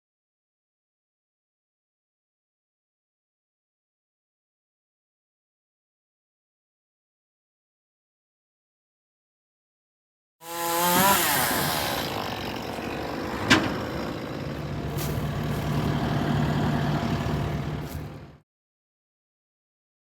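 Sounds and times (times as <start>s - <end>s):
engine revving and running: 10.4s - 18.4s.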